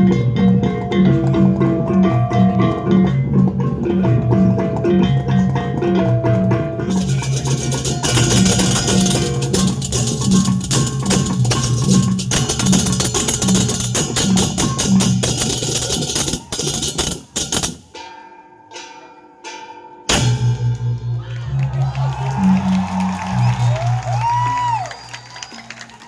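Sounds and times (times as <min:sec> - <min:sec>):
ringing metal tones: 0:00.0 - 0:22.0
gamelan ensemble playing: 0:00.0 - 0:25.5
cymbals clashing: 0:06.5 - 0:25.5.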